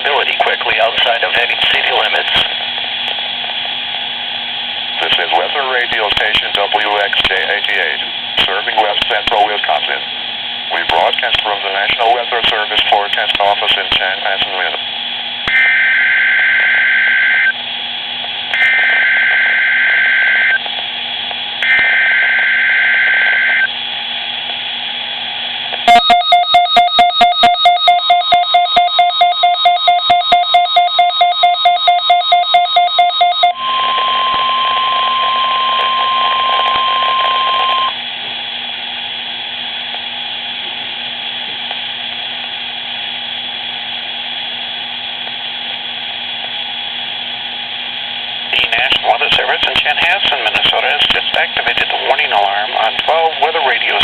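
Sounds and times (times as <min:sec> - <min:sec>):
steady warning alarm tone: 0:15.1 - 0:40.5.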